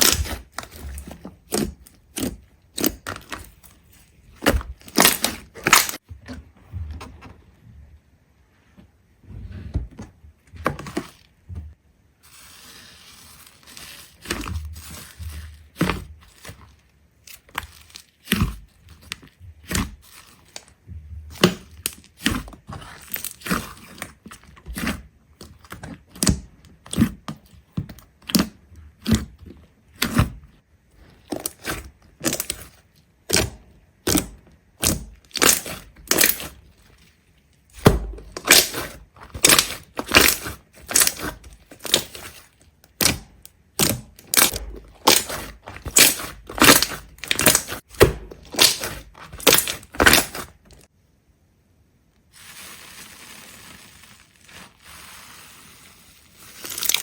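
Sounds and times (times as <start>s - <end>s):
sharp cracks and crunches: 0.0s - 6.0s, 31.0s - 50.9s, 56.4s - 57.0s.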